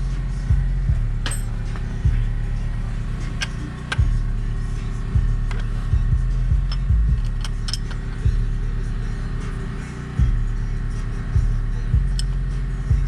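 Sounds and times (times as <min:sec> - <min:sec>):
background music with deep bass: 0:00.0 - 0:13.0
small metal parts clinking: 0:01.2 - 0:02.0, 0:06.6 - 0:08.2.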